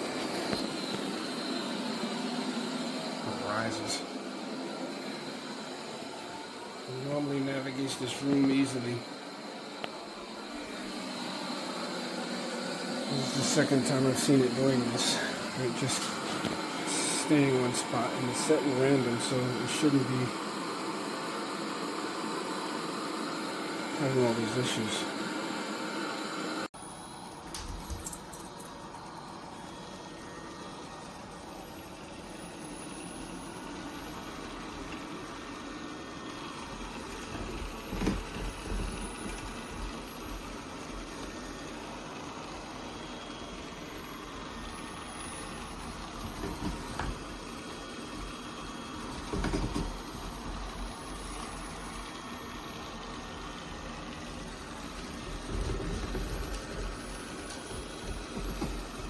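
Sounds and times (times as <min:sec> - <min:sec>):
robot vacuum running: 0:00.0 - 0:59.0.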